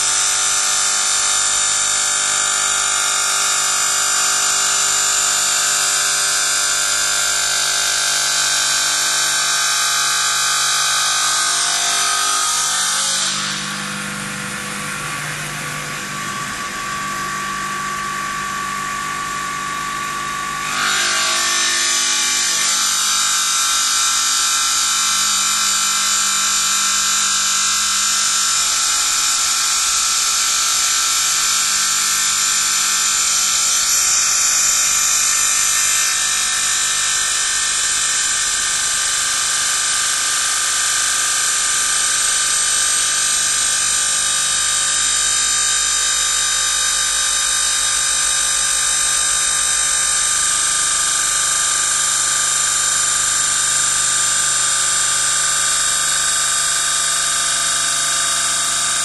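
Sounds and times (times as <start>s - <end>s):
saw blade grinding stone: 19.7s - 23.8s.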